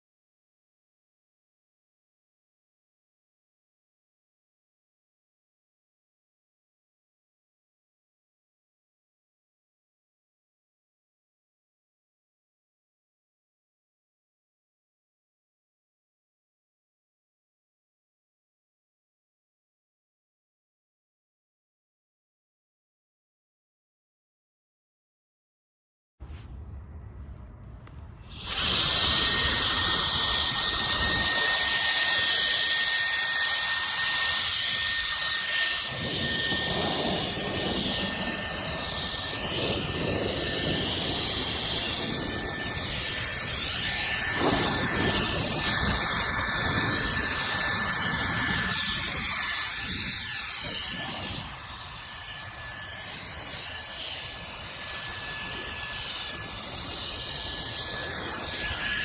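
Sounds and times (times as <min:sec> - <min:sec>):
air duster fan motor whine: 0:26.5 - 0:59.0
rushing blast of air: 0:28.2 - 0:32.8.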